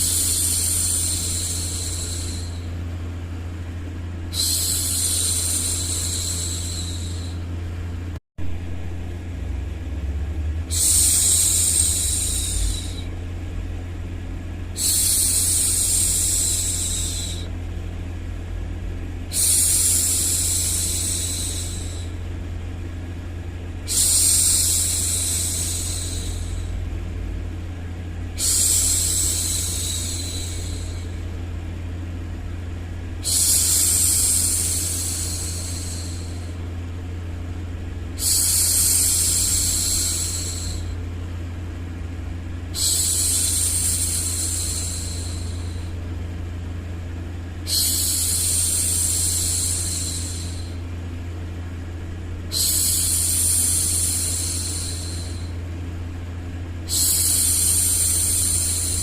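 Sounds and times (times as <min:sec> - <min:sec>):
woman shushing: 0:00.0 - 0:02.8, 0:04.3 - 0:07.4, 0:10.7 - 0:13.1, 0:14.8 - 0:17.5, 0:23.9 - 0:26.8, 0:28.4 - 0:31.2, 0:33.2 - 0:36.6, 0:38.2 - 0:40.9, 0:42.8 - 0:46.0, 0:47.7 - 0:50.8, 0:52.5 - 0:55.6, 0:56.9 - 0:59.0
low white noise hum: 0:00.0 - 0:59.0.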